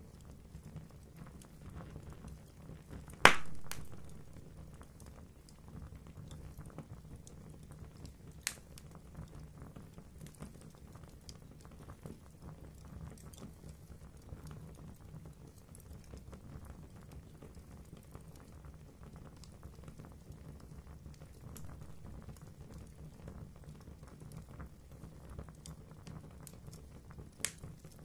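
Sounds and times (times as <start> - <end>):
fire crackling: 0.0 - 28.0
loud pop of fire: 3.2 - 4.7, 21.6 - 22.8, 27.4 - 27.8.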